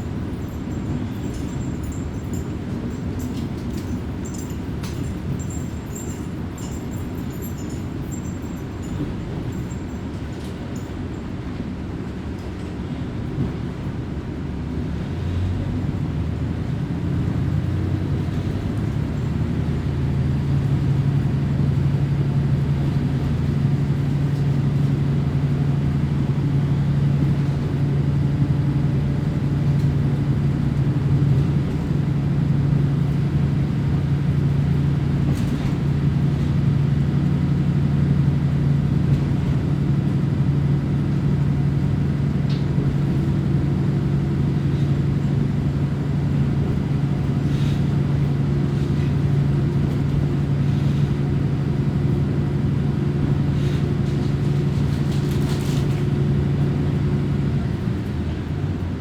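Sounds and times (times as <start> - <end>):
diesel railcar engine drone: 0.0 - 59.0
wheels rumbling on rails: 0.0 - 59.0.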